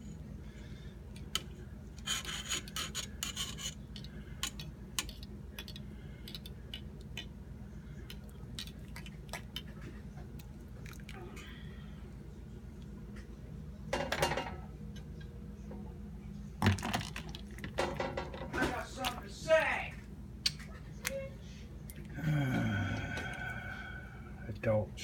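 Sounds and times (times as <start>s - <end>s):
utensil scraping pot: 2.0s - 3.8s.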